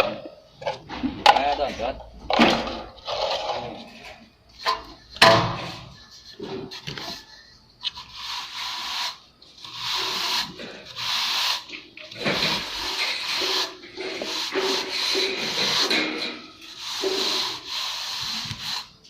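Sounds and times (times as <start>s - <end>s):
trowel scraping cement render: 0.1s - 19.0s.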